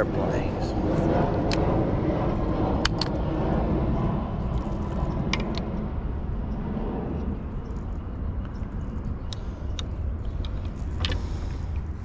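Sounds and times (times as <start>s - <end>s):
airplane drone overhead: 0.0s - 12.0s.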